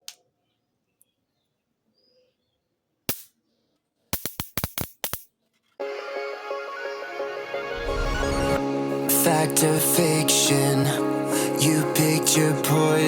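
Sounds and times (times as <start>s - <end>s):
background music: 5.8s - 13.0s.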